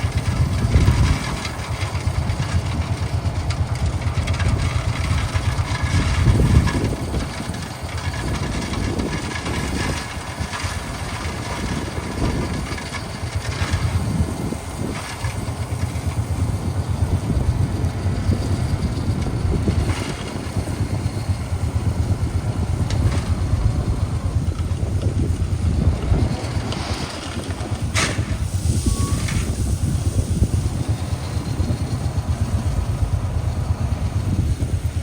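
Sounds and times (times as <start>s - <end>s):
diesel earthmover engine rumbling: 0.0s - 35.0s.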